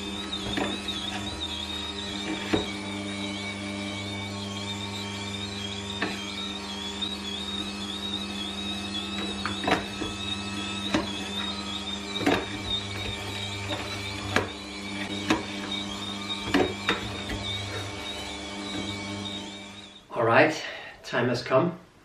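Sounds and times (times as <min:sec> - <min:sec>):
electric juicer motor humming: 0:00.0 - 0:20.1
sharp knocks in juicer: 0:02.3 - 0:02.8, 0:09.2 - 0:10.2, 0:10.8 - 0:11.2, 0:12.2 - 0:15.7, 0:16.4 - 0:17.5.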